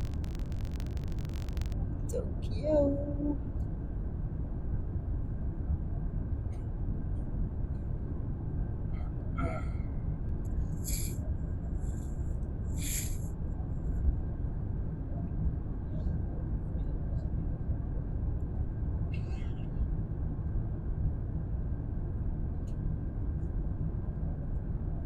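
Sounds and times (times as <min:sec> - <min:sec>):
airliner cabin rumble: 0:00.0 - 0:25.0
short hissing sounds: 0:10.8 - 0:11.2, 0:12.8 - 0:13.3.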